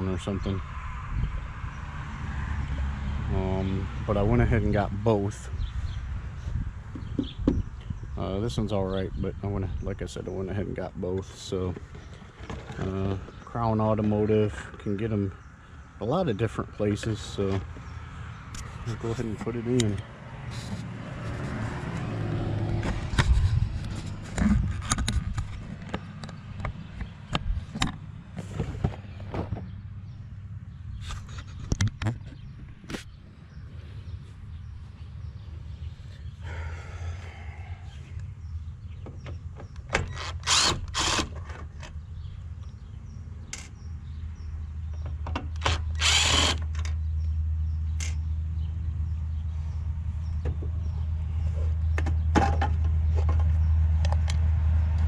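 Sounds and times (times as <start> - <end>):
motor vehicle passing: 0.6 - 4.9, 17.2 - 31.6, 32.2 - 39.0, 52.9 - 55.0
cordless drill whining: 40.2 - 41.2, 45.6 - 46.6.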